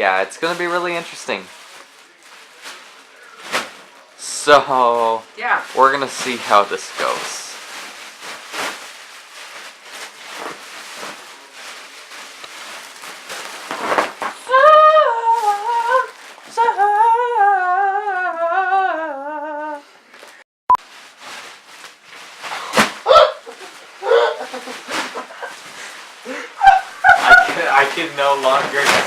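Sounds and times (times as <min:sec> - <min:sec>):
rustling: 0:00.1 - 0:16.7, 0:20.0 - 0:29.0
person humming: 0:14.4 - 0:20.0.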